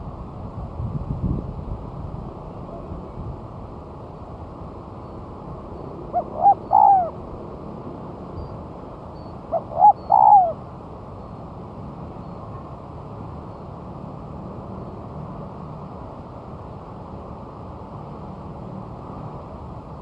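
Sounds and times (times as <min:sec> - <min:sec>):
dove cooing: 0:06.1 - 0:07.2, 0:09.5 - 0:10.6.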